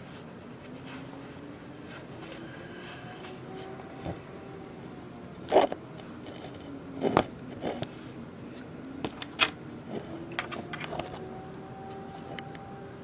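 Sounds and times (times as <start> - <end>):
faint steady hum: 0.0 - 13.0
clicks and knocks of objects: 9.0 - 11.2.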